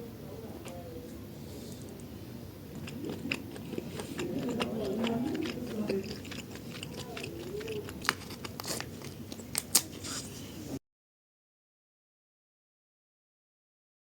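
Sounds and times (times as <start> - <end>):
person chewing food: 2.7 - 10.2.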